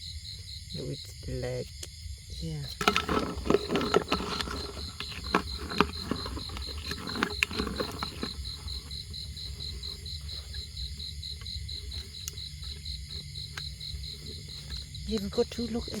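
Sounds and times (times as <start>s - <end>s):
cricket chirping: 0.0s - 16.0s
handling clicks and rustling: 2.8s - 15.3s.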